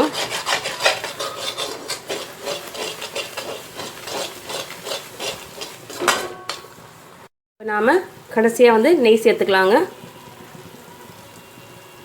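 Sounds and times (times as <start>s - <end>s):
ladle scraping and stirring in a pan: 0.0s - 6.9s.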